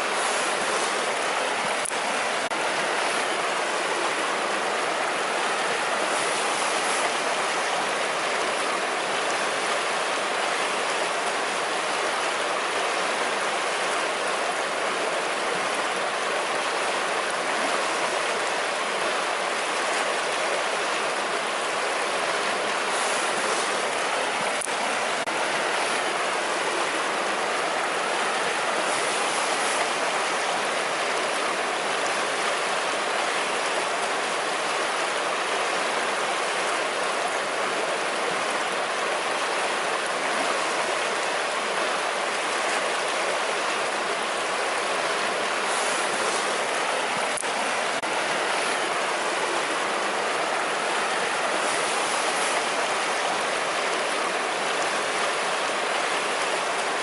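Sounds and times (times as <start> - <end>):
river water rushing: 0.0 - 57.0.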